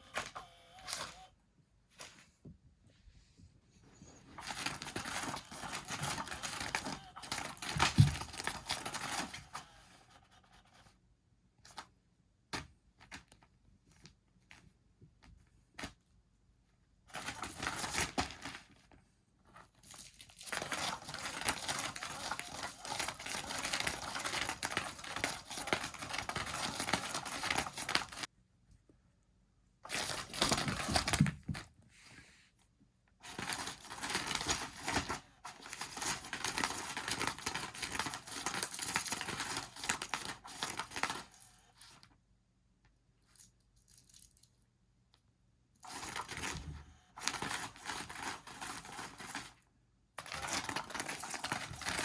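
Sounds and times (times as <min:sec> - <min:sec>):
cat scratching crinkly surface: 0:03.8 - 0:11.0, 0:17.1 - 0:28.3, 0:29.9 - 0:32.4, 0:33.2 - 0:42.1, 0:45.8 - 0:49.6, 0:50.2 - 0:52.0.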